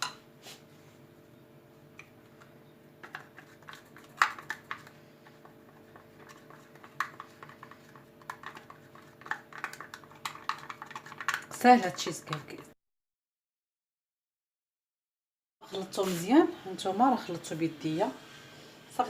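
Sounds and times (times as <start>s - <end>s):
hands mixing crumbs in bowl: 3.0s - 12.7s.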